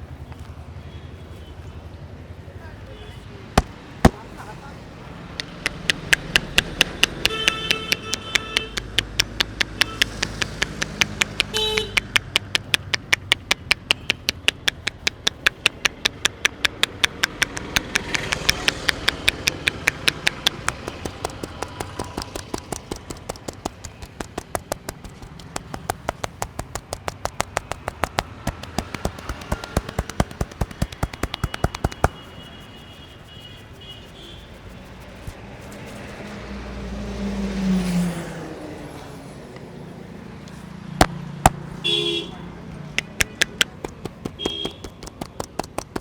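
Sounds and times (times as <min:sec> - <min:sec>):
hands slapping on head: 0:03.6 - 0:04.2, 0:05.4 - 0:32.3, 0:43.0 - 0:46.0.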